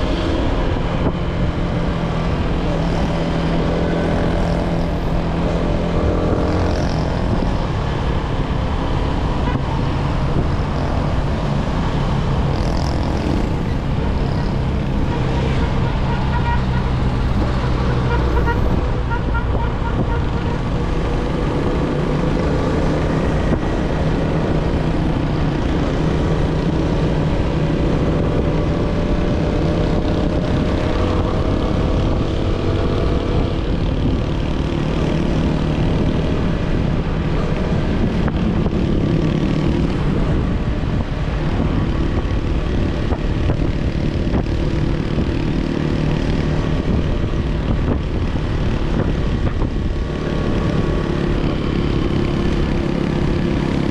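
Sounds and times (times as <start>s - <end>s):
motorcycle engine running: 0.0s - 20.6s.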